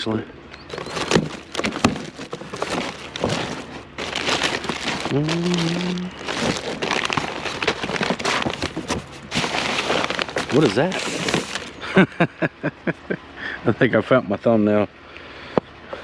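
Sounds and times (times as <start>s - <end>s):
plastic crinkling: 0.6s - 11.9s
rustling: 0.6s - 11.9s
short hum-like voice: 5.1s - 6.2s.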